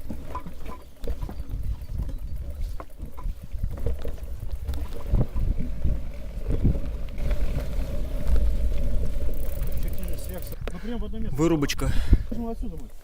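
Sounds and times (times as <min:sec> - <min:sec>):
wind buffeting microphone: 0:00.0 - 0:12.9.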